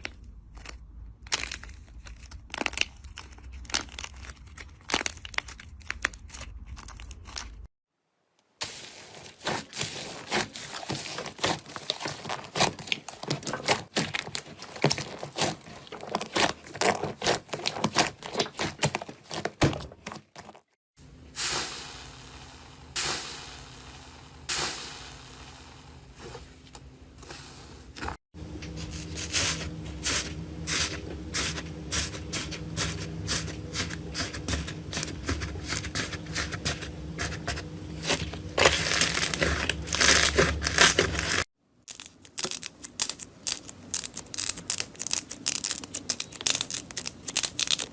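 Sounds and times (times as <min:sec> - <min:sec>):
faint steady hum: 0:21.0 - 0:41.4
slime crackling and popping: 0:38.1 - 0:47.9.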